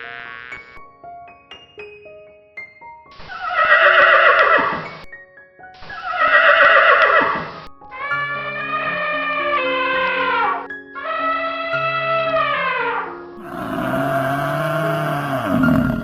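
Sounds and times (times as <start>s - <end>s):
light background music: 0.6s - 14.8s
horse neighing: 13.4s - 16.0s.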